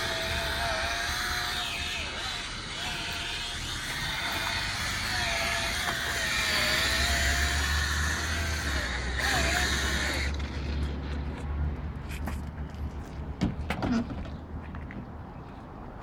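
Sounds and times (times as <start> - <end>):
power tool motor whining: 0.0 - 11.0.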